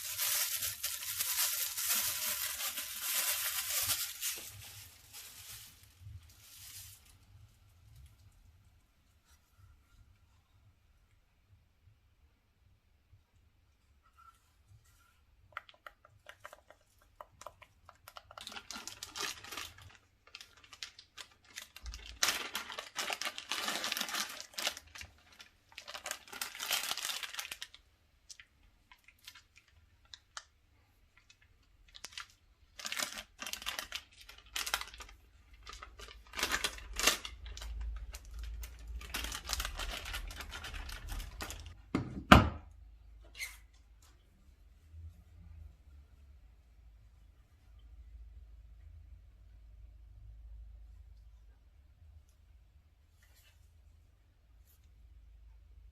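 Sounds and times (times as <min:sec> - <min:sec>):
packaging torn and crinkled: 0:00.0 - 0:07.1, 0:17.4 - 0:30.5, 0:31.2 - 0:41.8.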